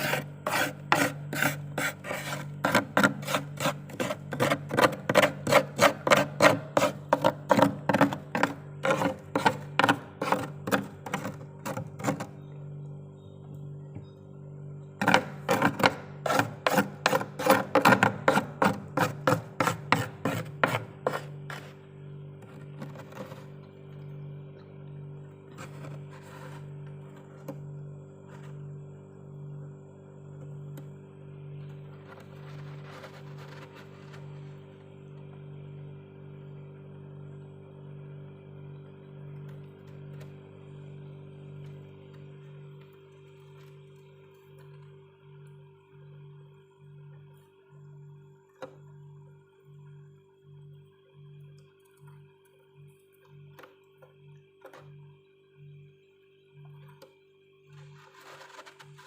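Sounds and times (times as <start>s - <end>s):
metal spoon scraping frost: 0.0s - 12.3s, 15.0s - 21.8s
low pulsing hum: 0.0s - 59.0s.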